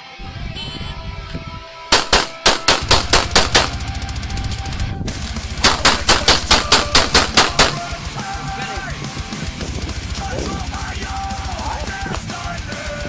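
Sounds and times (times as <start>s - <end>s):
heavy metal music: 0.0s - 13.0s
handgun shots: 1.9s - 3.8s, 5.6s - 7.9s.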